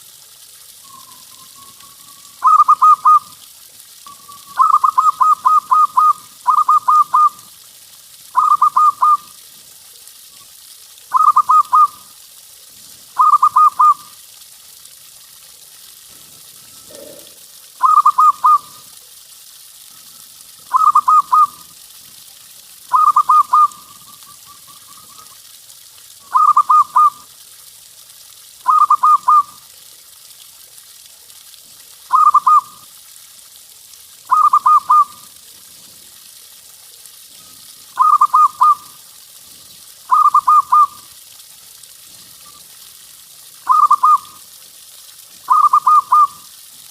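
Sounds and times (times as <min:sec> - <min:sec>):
faint steady hiss: 0:00.0 - 0:46.9
dove cooing: 0:01.0 - 0:03.3, 0:04.1 - 0:07.4, 0:08.4 - 0:09.2, 0:11.1 - 0:12.0, 0:13.2 - 0:14.0, 0:16.7 - 0:18.8, 0:20.7 - 0:21.6, 0:22.9 - 0:25.3, 0:26.3 - 0:27.2, 0:28.7 - 0:29.5, 0:34.3 - 0:35.2, 0:38.0 - 0:38.9, 0:40.1 - 0:41.0, 0:43.7 - 0:44.3, 0:45.5 - 0:46.4.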